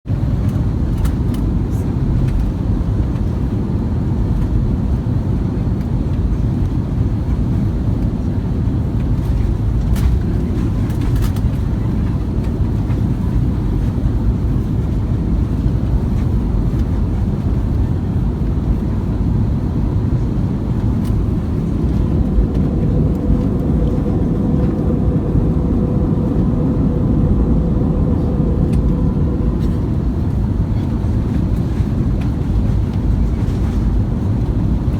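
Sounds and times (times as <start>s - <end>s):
jet airliner cabin roar: 0.1s - 34.9s
steady hum: 14.1s - 34.9s.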